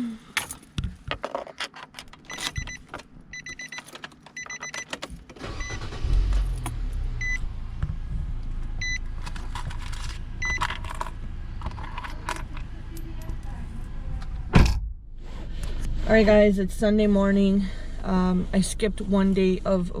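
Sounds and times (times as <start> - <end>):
keys jingling: 0.3 - 6.7, 9.2 - 13.6
car engine starting and idling: 2.1 - 20.0
car warning chime beeping: 2.3 - 6.5, 7.2 - 7.5, 8.8 - 9.1.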